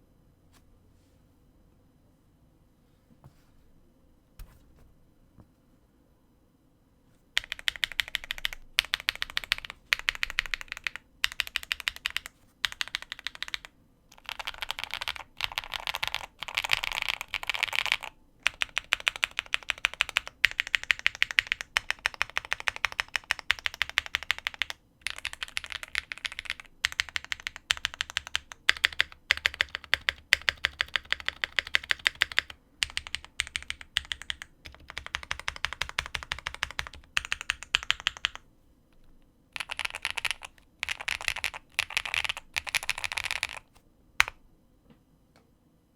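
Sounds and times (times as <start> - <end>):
mechanical keyboard typing: 7.4 - 38.4, 39.6 - 44.4.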